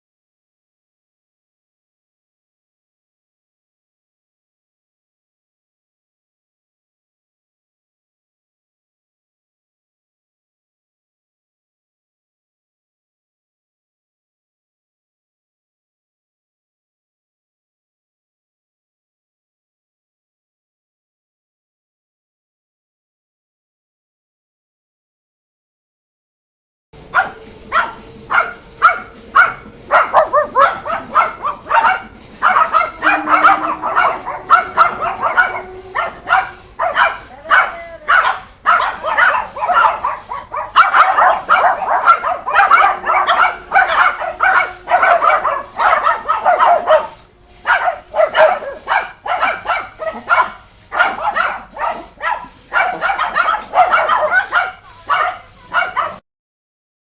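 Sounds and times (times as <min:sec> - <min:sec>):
dogs barking and yipping: 0:27.0 - 0:56.2.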